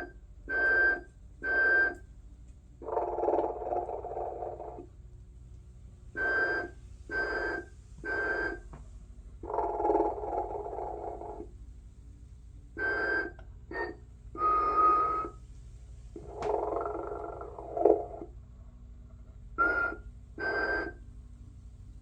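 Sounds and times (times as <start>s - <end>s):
faint low hum: 0.0s - 22.0s
toy snoring: 2.8s - 4.8s, 9.4s - 11.4s, 16.2s - 18.3s.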